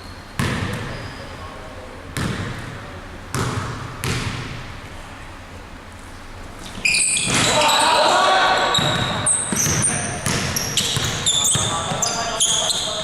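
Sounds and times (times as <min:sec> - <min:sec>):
basketball bouncing on court floor: 0:00.4 - 0:01.0, 0:02.2 - 0:04.6, 0:08.7 - 0:12.2.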